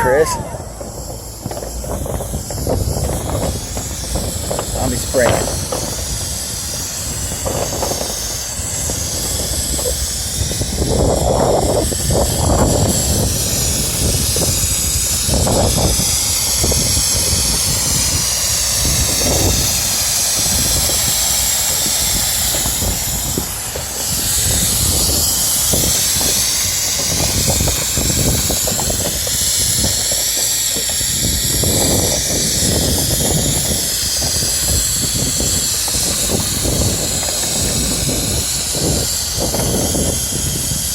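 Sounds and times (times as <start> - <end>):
low rumble: 0.0 - 6.2
spray gun hissing: 0.0 - 40.9.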